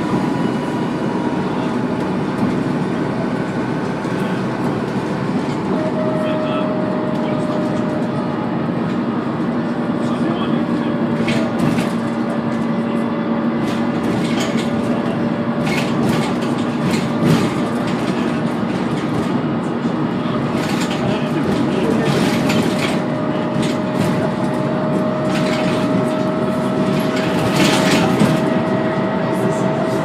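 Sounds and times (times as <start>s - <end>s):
bus engine with turbo whine: 0.0s - 30.0s
knocks and rattles: 13.6s - 19.5s, 20.5s - 28.6s.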